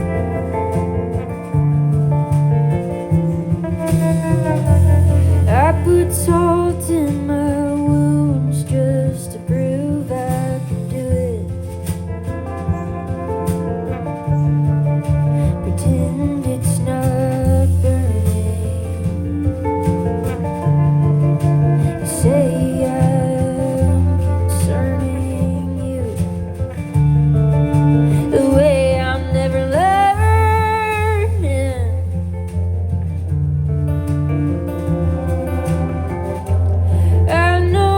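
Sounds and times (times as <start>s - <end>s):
acoustic guitar: 0.0s - 37.9s
bass: 0.0s - 37.9s
person singing: 21.8s - 26.7s, 27.9s - 32.1s, 36.8s - 37.9s.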